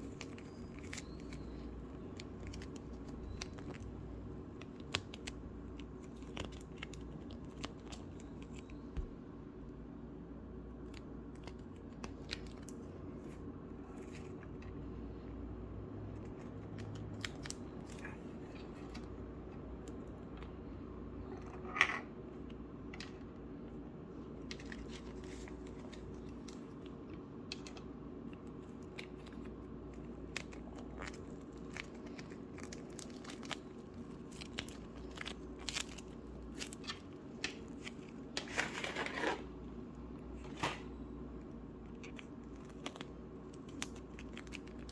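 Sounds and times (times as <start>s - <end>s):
steady low hum: 0.0s - 44.9s
slime crackling by hand: 24.3s - 44.9s.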